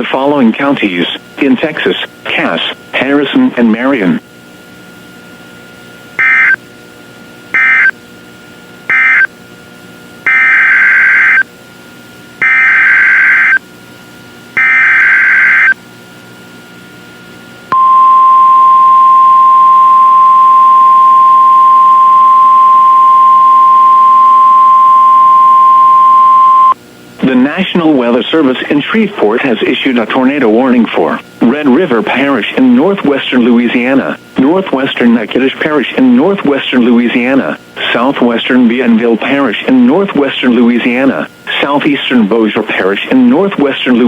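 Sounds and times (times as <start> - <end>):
digital data bursts: 6.2 - 6.6, 7.6 - 7.9, 8.9 - 9.3, 10.3 - 11.4, 12.4 - 13.6, 14.6 - 15.8
steady warning alarm tone: 6.2 - 6.6, 7.5 - 8.0, 8.9 - 9.3, 10.2 - 11.5, 12.4 - 13.6, 14.6 - 15.8, 17.7 - 26.8.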